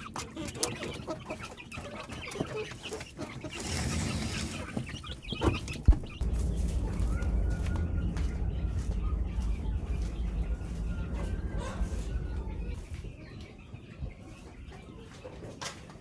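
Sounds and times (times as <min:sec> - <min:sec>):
chickens clucking: 0:00.0 - 0:16.0
low rumble: 0:06.2 - 0:14.7.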